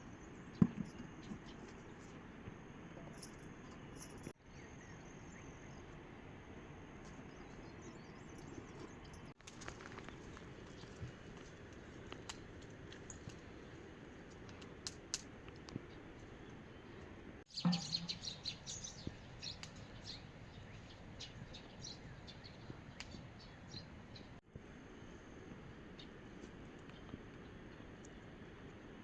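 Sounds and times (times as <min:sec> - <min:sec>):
small birds chirping: 0:15.7 - 0:24.4.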